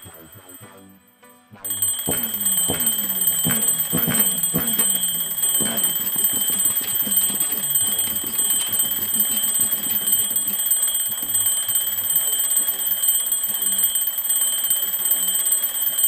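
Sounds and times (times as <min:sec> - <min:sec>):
alarm clock beeping: 0:00.0 - 0:16.0.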